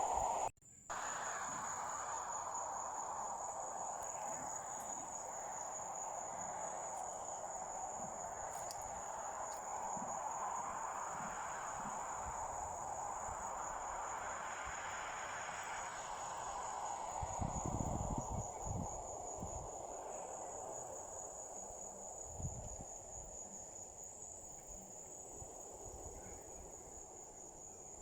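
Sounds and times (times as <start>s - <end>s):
background rush: 0.0s - 22.2s
crickets trilling: 0.0s - 28.0s.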